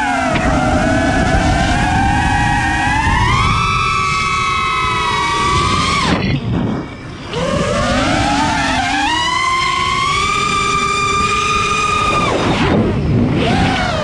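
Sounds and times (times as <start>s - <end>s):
quadcopter motors whining: 0.0s - 14.0s
rushing noise: 0.0s - 14.0s.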